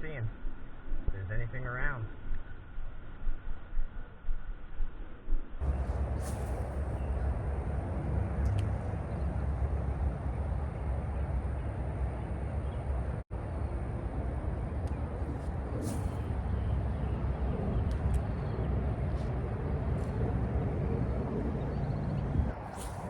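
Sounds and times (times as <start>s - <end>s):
faint high whine: 0.0s - 23.0s
low outdoor rumble: 0.0s - 23.0s.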